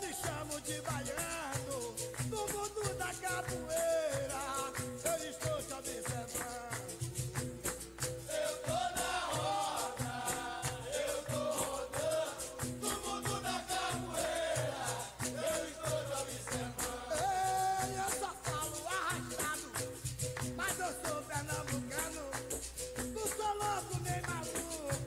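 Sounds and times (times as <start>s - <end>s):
berimbau and percussion: 0.0s - 25.0s
shaker rattling: 0.0s - 25.0s
person singing: 17.0s - 19.9s.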